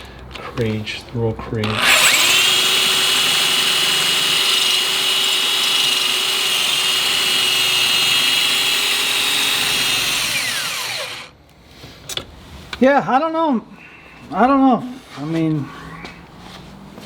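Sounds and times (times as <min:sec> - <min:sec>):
electric drill drilling steel: 0:01.6 - 0:11.4.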